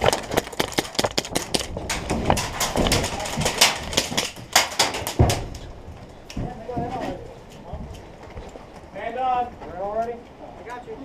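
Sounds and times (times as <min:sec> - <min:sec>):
sharp clicks and knocks: 0:00.0 - 0:06.5.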